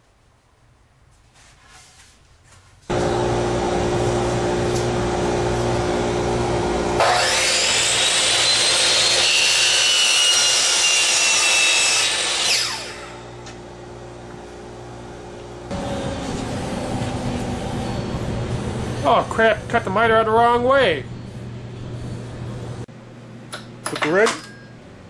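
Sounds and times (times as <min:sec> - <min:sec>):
power saw cutting wood with whine: 0:02.9 - 0:21.3.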